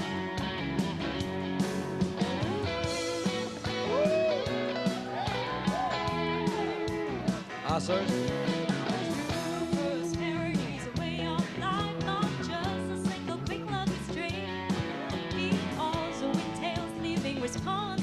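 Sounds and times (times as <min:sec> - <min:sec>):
band accompaniment: 0:00.0 - 0:18.0
person singing: 0:09.0 - 0:14.5.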